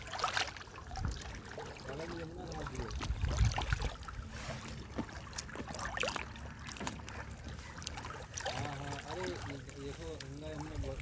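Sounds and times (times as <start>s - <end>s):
water sounds: 0.0s - 11.0s
wind on microphone: 2.8s - 4.4s.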